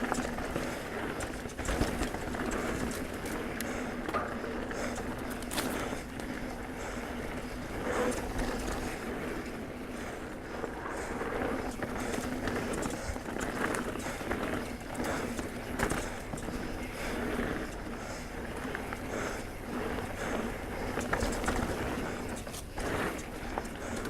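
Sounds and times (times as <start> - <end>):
bike knocks and rattles: 0.0 - 6.4
bike tyres rolling on dirt: 0.0 - 24.0.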